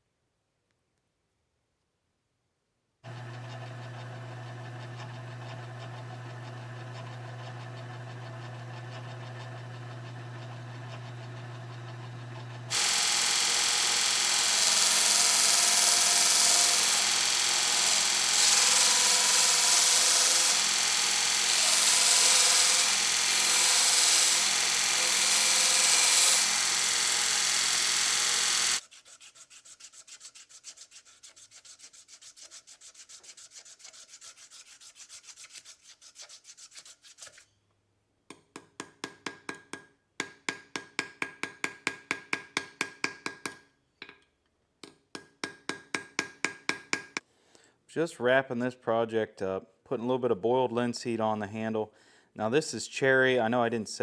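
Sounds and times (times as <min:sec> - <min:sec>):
quick rubbing strokes: 0:28.8 - 0:37.5.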